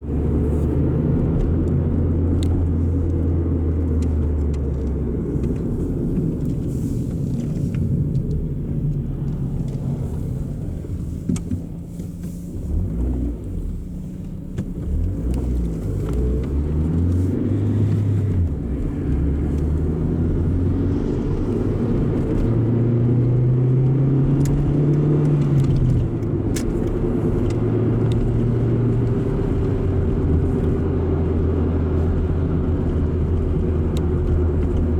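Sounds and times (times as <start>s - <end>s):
car engine exhaust revving: 12.3s - 26.4s.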